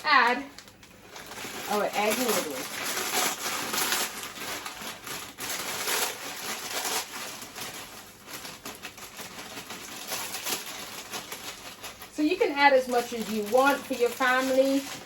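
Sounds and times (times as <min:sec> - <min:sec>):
pot of water boiling: 0:00.0 - 0:05.4.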